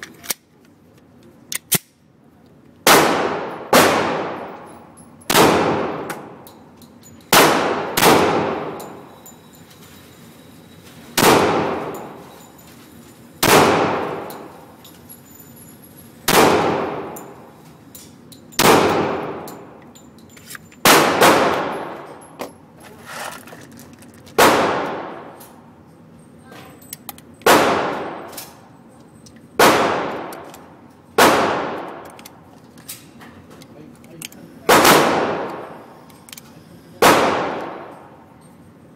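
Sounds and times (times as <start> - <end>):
pistol shots echoing: 2.8 - 4.7, 5.3 - 6.4, 7.3 - 9.1, 11.2 - 12.2, 13.4 - 14.6, 16.3 - 17.5, 18.6 - 19.8, 20.8 - 22.2, 24.4 - 25.4, 27.4 - 28.4, 29.6 - 30.6, 31.2 - 32.2, 34.7 - 35.9, 37.0 - 38.2.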